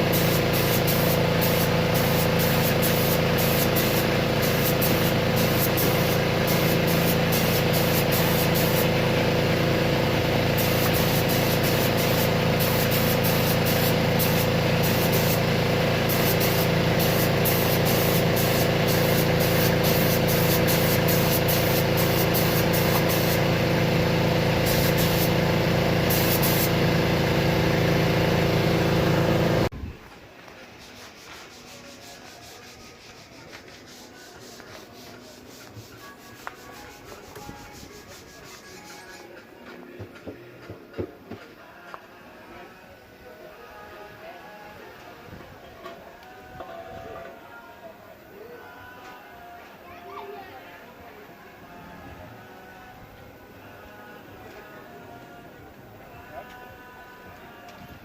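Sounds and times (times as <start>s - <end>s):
loud mechanical drone: 0.0s - 29.7s.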